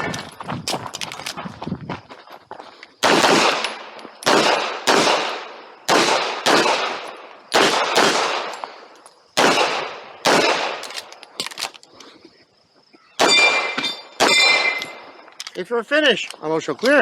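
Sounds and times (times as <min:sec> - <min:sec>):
loud handgun shots: 0:03.0 - 0:08.6, 0:09.4 - 0:10.9, 0:13.2 - 0:15.0.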